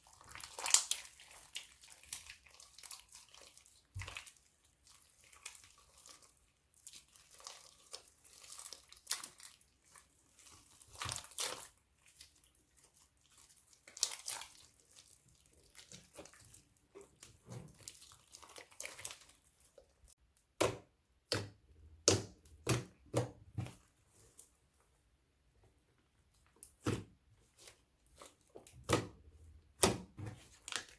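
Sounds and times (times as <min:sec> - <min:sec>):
crunchy slime crackling and popping: 0:00.2 - 0:04.4, 0:06.8 - 0:12.6, 0:13.3 - 0:19.4.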